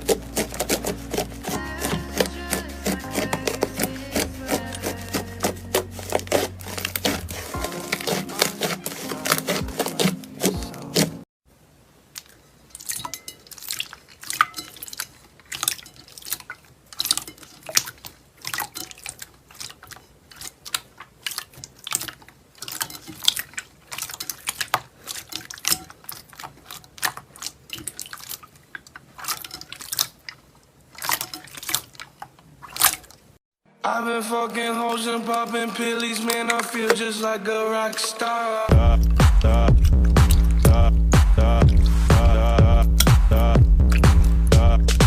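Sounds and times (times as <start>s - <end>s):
slime squeezed by hand: 0.0s - 11.2s.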